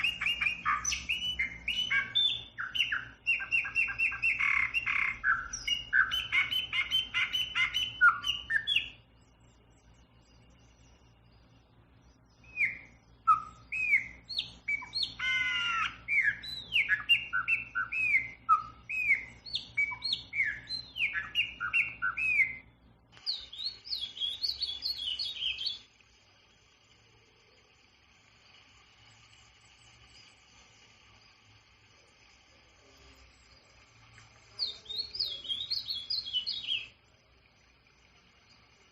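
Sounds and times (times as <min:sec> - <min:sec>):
songbird whistling phrases: 0:00.0 - 0:09.0, 0:12.3 - 0:25.9, 0:34.6 - 0:37.0
faint distant bird calls: 0:00.0 - 0:38.9
high twittering birdsong: 0:00.0 - 0:38.9.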